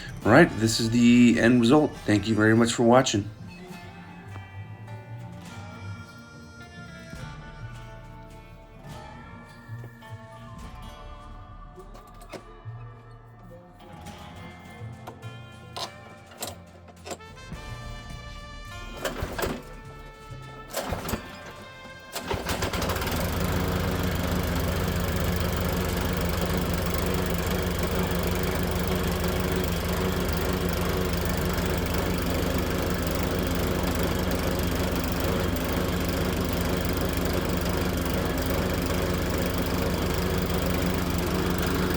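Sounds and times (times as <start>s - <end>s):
lawn mower engine starting and running: 0.0s - 3.4s, 15.0s - 41.9s.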